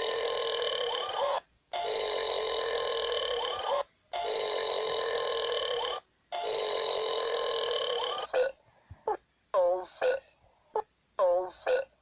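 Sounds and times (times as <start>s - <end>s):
long burp: 0.0s - 1.0s, 1.9s - 3.5s, 4.3s - 8.6s.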